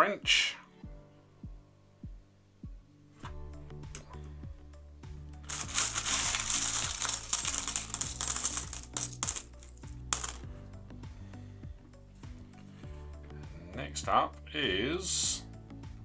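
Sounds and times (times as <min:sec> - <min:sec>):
soft background music: 0:00.0 - 0:16.0
coins jingling: 0:05.5 - 0:10.5.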